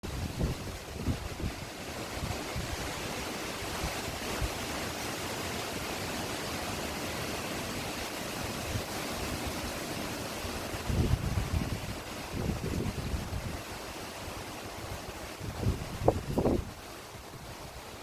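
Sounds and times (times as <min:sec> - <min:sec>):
strong wind rushing: 0:00.0 - 0:01.6, 0:10.8 - 0:13.6, 0:15.4 - 0:17.6
wind buffeting microphone: 0:00.0 - 0:03.0, 0:10.8 - 0:13.8, 0:14.8 - 0:17.9.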